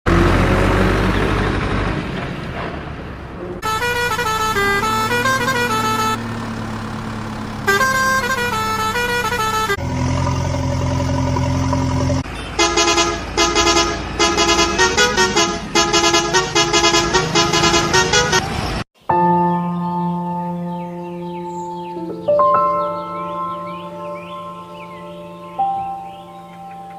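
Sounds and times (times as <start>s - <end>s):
steady horn blast: 3.6s - 6.4s, 7.6s - 10.1s, 11.7s - 18.5s
toy engine rumble: 9.8s - 12.2s.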